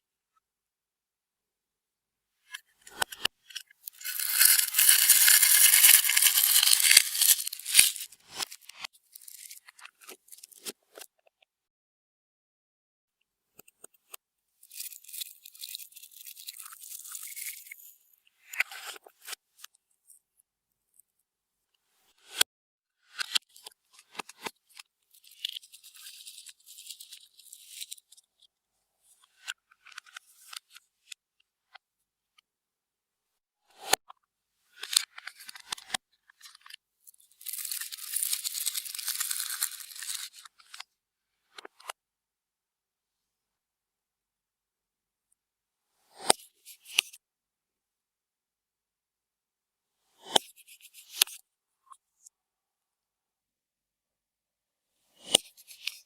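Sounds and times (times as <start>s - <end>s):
slime squelching and crackling: 3.9s - 8.6s, 37.4s - 40.3s.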